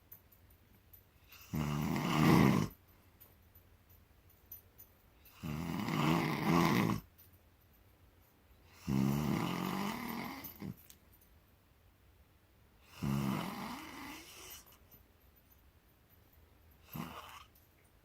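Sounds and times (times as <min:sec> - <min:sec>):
man snoring loudly: 0:01.5 - 0:02.8, 0:05.4 - 0:07.0, 0:08.8 - 0:10.7, 0:12.9 - 0:14.6.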